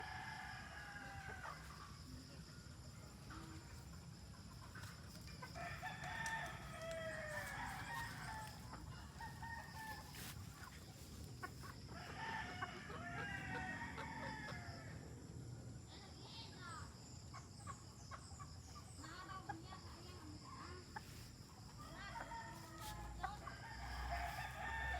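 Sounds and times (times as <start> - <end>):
rooster crowing: 5.6 - 10.3, 12.0 - 14.9, 22.1 - 24.9.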